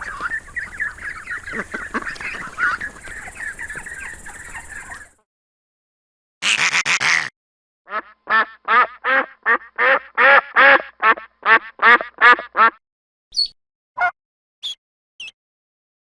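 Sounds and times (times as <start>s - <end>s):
duck quacking: 1.2s - 3.0s, 6.4s - 7.3s, 7.9s - 12.8s.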